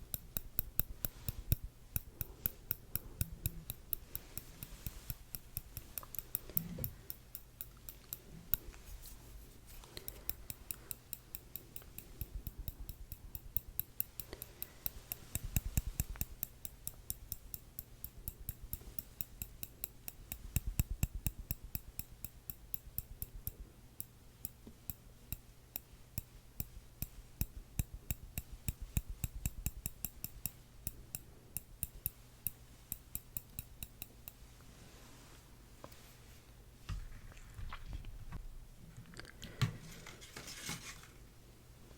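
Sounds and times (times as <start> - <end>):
metal tweezers clicking: 0.0 - 34.6.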